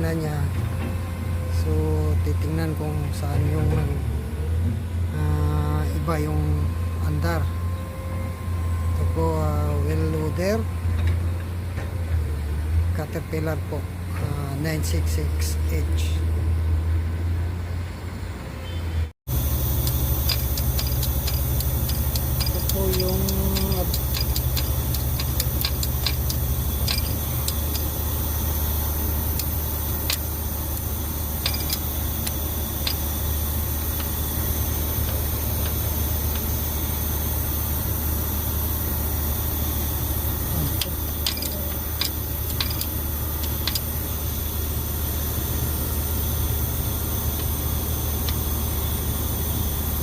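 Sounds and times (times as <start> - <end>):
diesel engine drone: 0.0 - 50.0
sharp engine ticks: 19.3 - 33.2.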